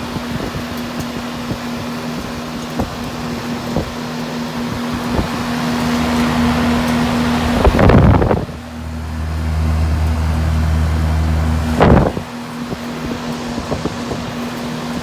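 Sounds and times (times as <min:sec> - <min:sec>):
condenser fans rushing: 0:00.0 - 0:15.0
rain hitting fan: 0:00.0 - 0:15.0
air conditioner hum: 0:04.7 - 0:13.6.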